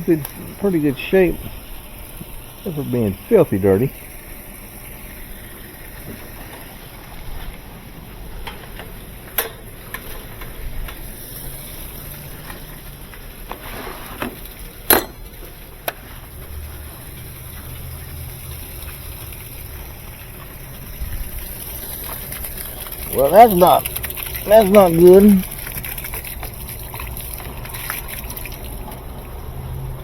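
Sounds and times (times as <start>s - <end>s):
washing machine hum: 0.0s - 30.0s.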